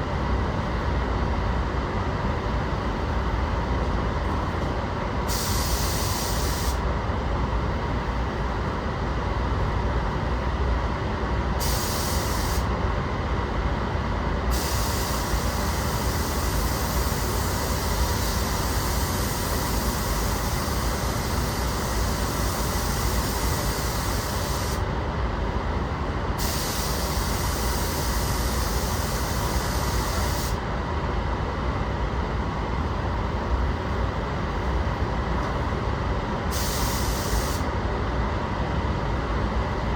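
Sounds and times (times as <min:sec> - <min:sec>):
paint spray gun hissing: 0:05.3 - 0:06.8, 0:11.6 - 0:12.7, 0:14.5 - 0:24.8, 0:26.4 - 0:30.6, 0:36.5 - 0:37.7.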